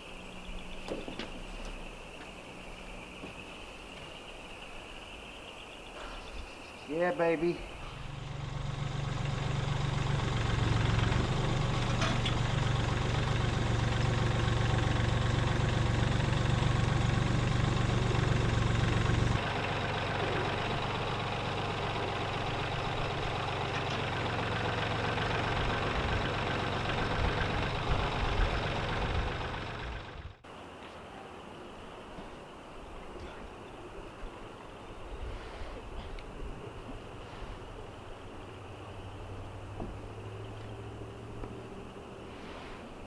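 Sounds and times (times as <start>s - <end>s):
tractor engine running: 7.4s - 30.7s, 35.9s - 43.0s.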